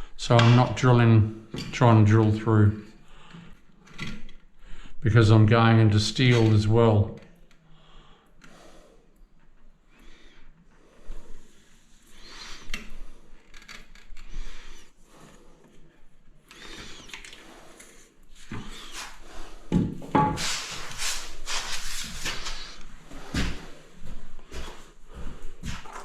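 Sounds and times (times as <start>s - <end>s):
tools knocking and thudding: 19.7s - 20.5s.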